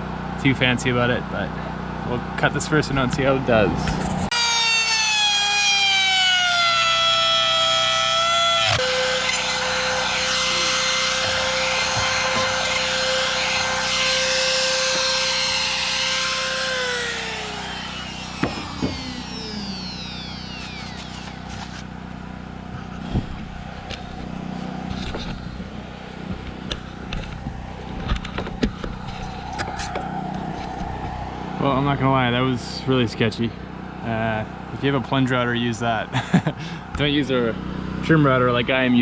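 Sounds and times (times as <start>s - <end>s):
router high whine: 4.3s - 32.5s.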